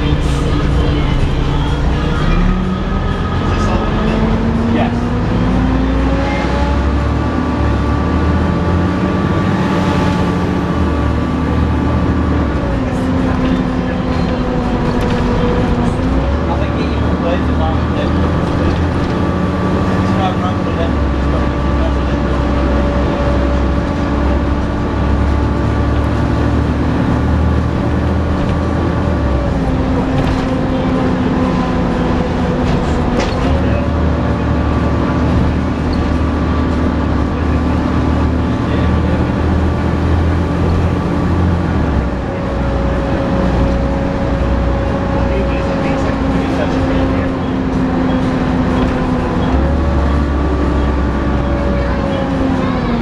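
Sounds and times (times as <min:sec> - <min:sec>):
hoover-like whine: 0:00.0 - 0:07.8
whining engine tone rising in pitch: 0:00.0 - 0:18.2
bus diesel engine pulling hard: 0:00.0 - 0:53.0.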